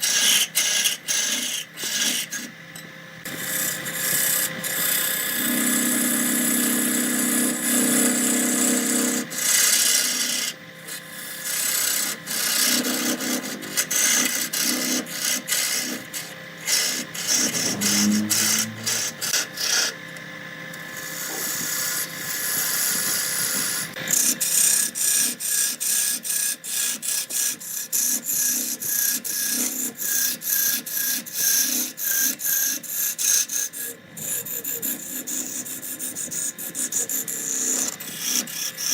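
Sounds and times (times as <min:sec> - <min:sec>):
turning tool scraping wood on lathe: 0:00.0 - 0:02.5, 0:03.4 - 0:20.0, 0:21.0 - 0:24.0.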